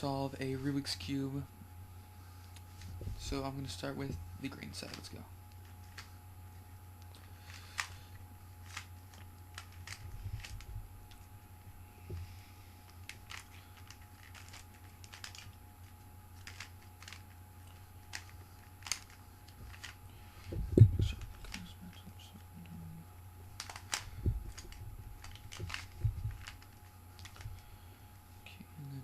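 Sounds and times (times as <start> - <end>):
steady low hum: 0.0 - 29.0
dull low thumps: 20.5 - 21.4, 24.2 - 25.2, 25.9 - 26.5.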